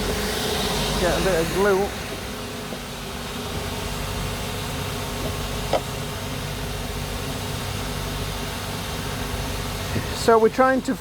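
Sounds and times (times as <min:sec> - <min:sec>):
machine humming and hissing: 0:00.0 - 0:11.0.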